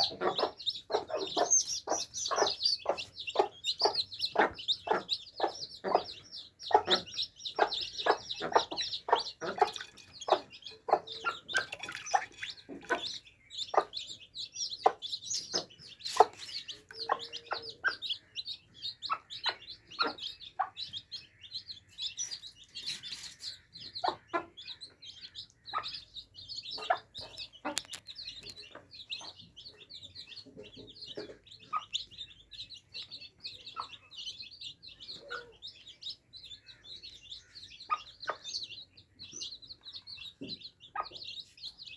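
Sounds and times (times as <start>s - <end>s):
chicks peeping: 0.0s - 41.9s
short sharp pecks or clucks: 14.9s - 17.4s, 26.8s - 28.8s.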